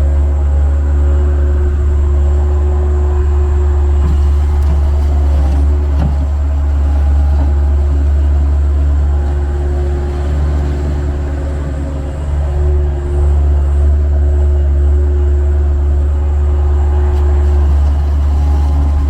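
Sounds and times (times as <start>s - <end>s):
engine droning: 0.0s - 19.0s.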